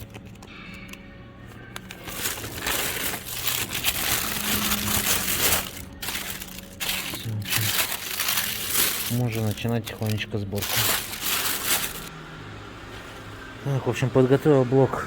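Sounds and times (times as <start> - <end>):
packaging crinkling: 0.0 - 0.5, 1.7 - 12.1.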